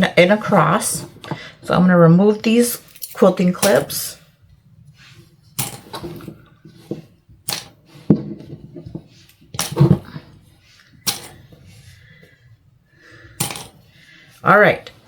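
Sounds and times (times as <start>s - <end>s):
plastic clips clicking: 7.5s - 7.7s.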